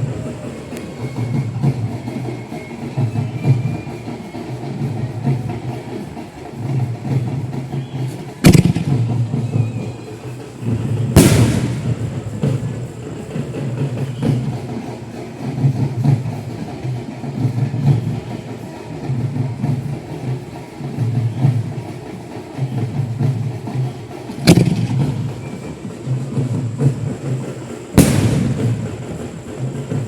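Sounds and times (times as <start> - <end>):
firework shells bursting: 8.4 - 9.1, 10.7 - 14.2, 24.5 - 25.7, 27.9 - 30.0.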